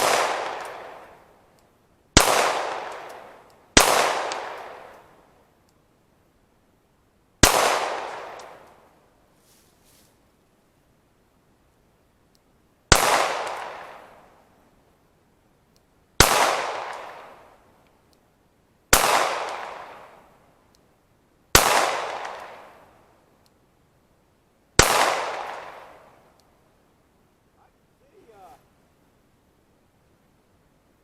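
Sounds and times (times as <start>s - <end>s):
pistol shots with echo: 0.0s - 1.2s, 2.2s - 5.0s, 12.9s - 14.0s, 16.2s - 17.4s, 19.0s - 20.0s, 21.6s - 22.8s, 24.8s - 26.0s.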